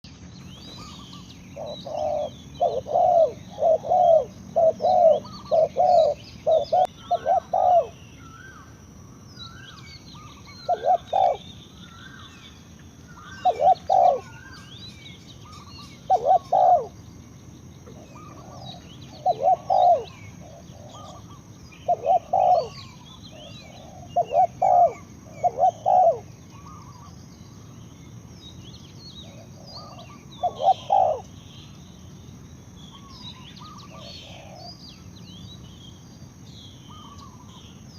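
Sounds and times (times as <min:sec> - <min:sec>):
small birds chirping: 0:00.0 - 0:37.9
dove cooing: 0:00.7 - 0:08.0, 0:10.2 - 0:11.5, 0:13.2 - 0:14.7, 0:15.4 - 0:17.0, 0:17.8 - 0:27.1, 0:29.2 - 0:31.3, 0:32.9 - 0:34.8.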